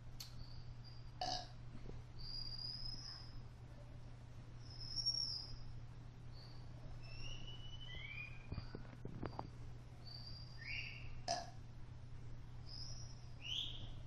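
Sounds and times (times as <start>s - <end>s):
steady low hum: 0.0s - 14.0s
faint bird chirps: 0.3s - 1.2s, 2.2s - 4.0s, 4.6s - 11.4s, 12.6s - 14.0s.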